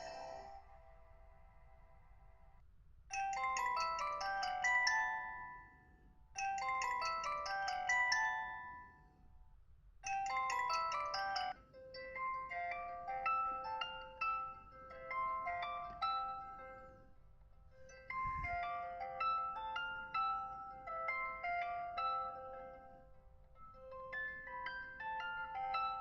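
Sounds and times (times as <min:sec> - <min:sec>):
phone ringtone chime melody: 0:00.0 - 0:01.6, 0:03.1 - 0:09.1, 0:10.0 - 0:17.1, 0:17.7 - 0:26.0.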